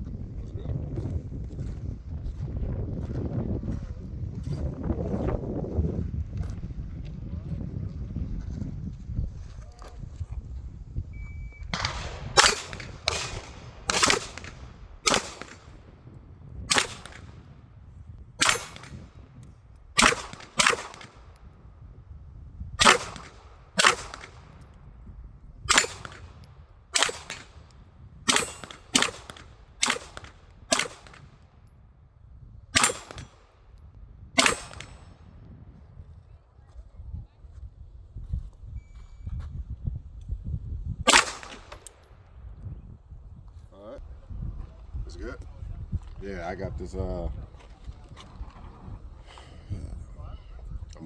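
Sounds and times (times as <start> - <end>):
pistol shots: 11.7 - 16.0, 16.7 - 17.5, 18.4 - 19.2, 20.0 - 21.4, 22.8 - 24.6, 25.7 - 27.7, 28.3 - 31.4, 32.8 - 33.6, 34.4 - 35.2, 41.1 - 42.0.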